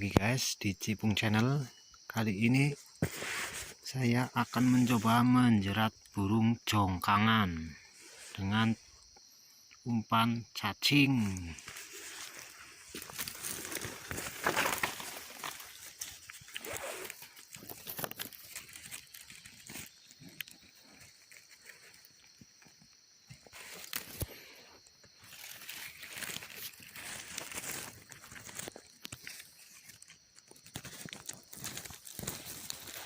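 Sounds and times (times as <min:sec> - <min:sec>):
rustling and crunching of leaf litter: 0:03.0 - 0:05.4, 0:10.9 - 0:22.3, 0:23.3 - 0:33.0.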